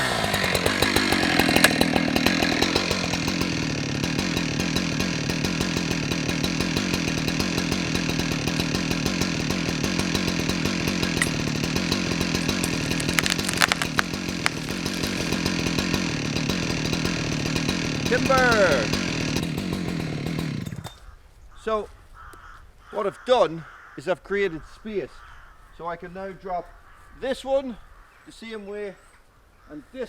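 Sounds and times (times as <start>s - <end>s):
wood cracking: 0.0s - 3.0s, 10.2s - 16.0s
chainsaw cutting wood: 0.0s - 21.0s.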